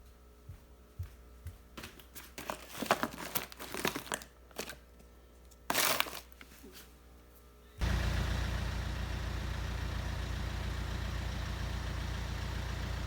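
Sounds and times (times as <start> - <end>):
crinkling and rustling: 1.9 - 7.0.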